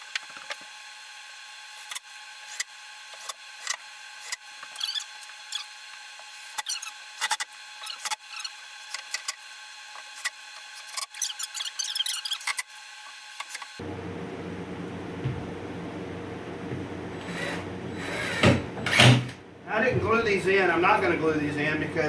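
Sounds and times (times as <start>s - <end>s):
short squeaks: 4.7s - 5.7s, 6.4s - 9.4s, 10.2s - 12.7s.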